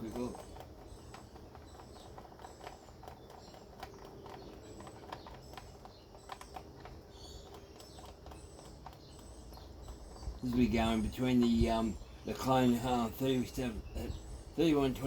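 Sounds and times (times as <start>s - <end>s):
chainsaw parts clicking and tapping: 0.0s - 11.5s
birds chirping: 0.0s - 15.0s.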